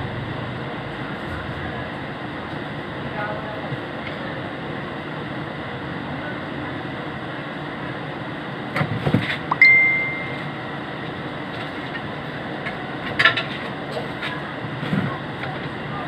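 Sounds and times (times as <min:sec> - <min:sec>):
steady background noise: 0:00.0 - 0:16.0
ringing metal strike: 0:09.5 - 0:10.5.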